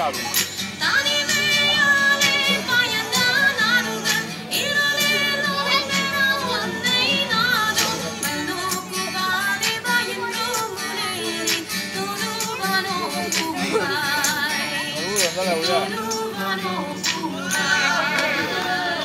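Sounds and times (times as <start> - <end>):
backing music with percussion: 0.0 - 3.2
woman singing: 0.7 - 19.0.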